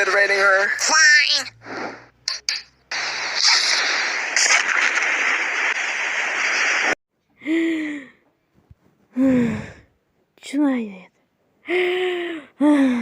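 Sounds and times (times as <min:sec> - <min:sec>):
hissing rushing sound effect: 0:02.9 - 0:07.0.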